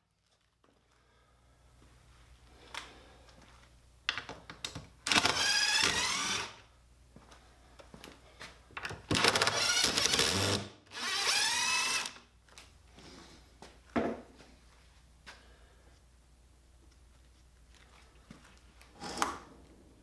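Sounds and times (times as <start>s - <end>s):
power drill spinning up: 5.1s - 6.6s, 9.1s - 12.2s.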